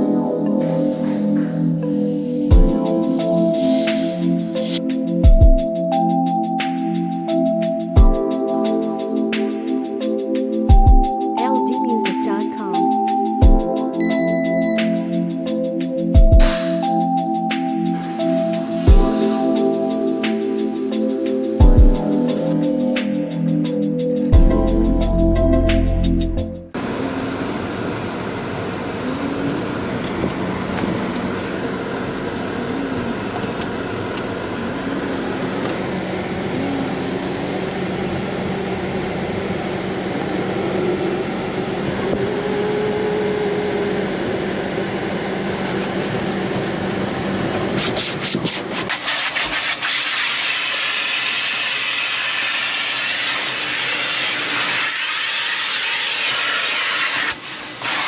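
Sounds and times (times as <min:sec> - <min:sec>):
car wash machinery humming: 0:00.0 - 0:09.4, 0:13.0 - 0:58.0
high-pressure water spray hiss: 0:00.6 - 0:04.8, 0:18.0 - 0:21.2, 0:47.6 - 0:58.0.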